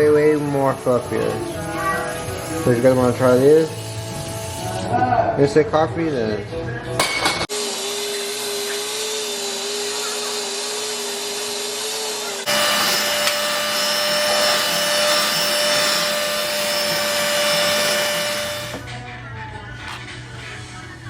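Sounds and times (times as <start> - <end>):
electric mixer motor whining: 0.0 - 4.9, 7.5 - 18.9.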